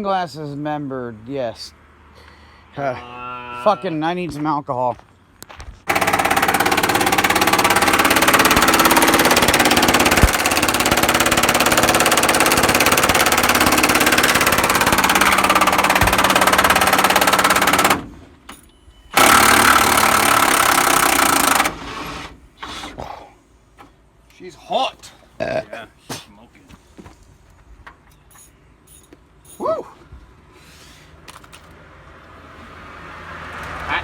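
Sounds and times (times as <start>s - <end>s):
power tool running hard: 5.9s - 18.1s, 19.2s - 21.8s.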